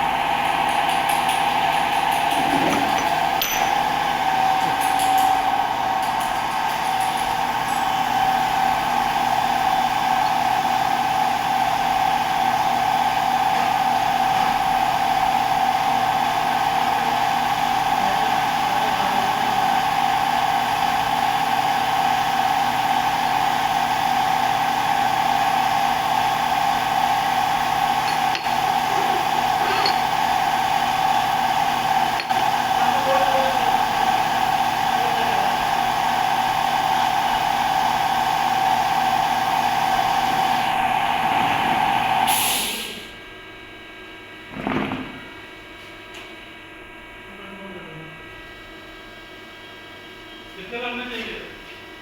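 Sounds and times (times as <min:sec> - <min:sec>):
machine tool high whine: 0:00.0 - 0:42.8.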